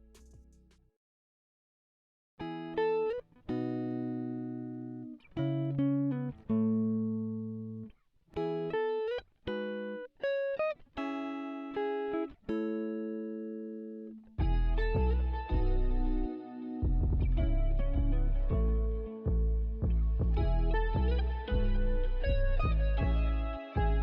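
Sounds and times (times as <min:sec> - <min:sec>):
guitar plucked chords: 0:02.4 - 0:24.0.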